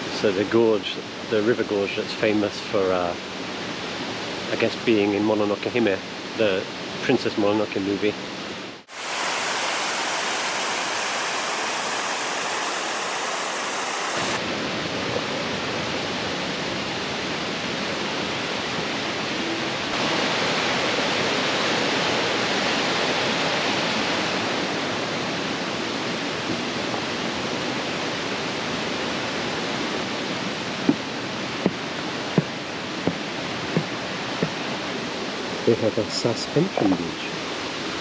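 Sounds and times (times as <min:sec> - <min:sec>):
river rushing over rocks: 0:08.9 - 0:14.4, 0:19.9 - 0:25.6.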